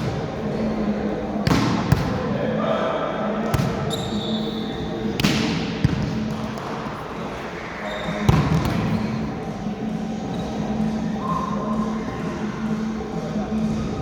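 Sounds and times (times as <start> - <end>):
murmur of players' voices: 0.0 - 14.0.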